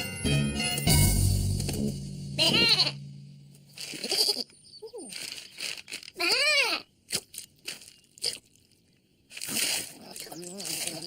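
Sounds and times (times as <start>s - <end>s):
cartoon lamb vocal sounds: 2.4s - 3.0s, 6.2s - 6.8s.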